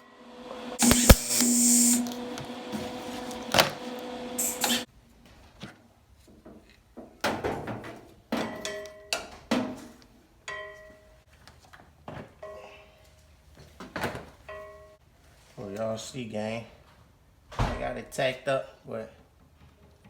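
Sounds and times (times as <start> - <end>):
welder arc hissing and crackling: 0.8 - 2.2, 4.4 - 4.9.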